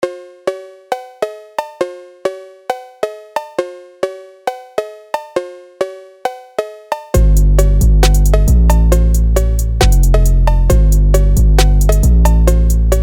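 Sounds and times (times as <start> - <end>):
melody of ringing struck notes: 6.6 - 13.0.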